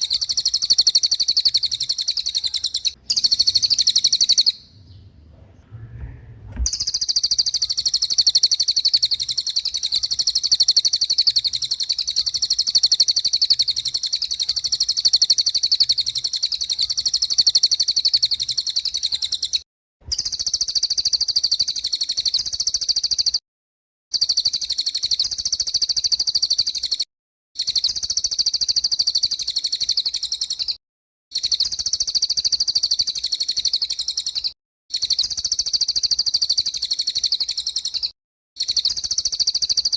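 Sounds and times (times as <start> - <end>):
songbird rapid high-pitched trilling: 0.0 - 5.0.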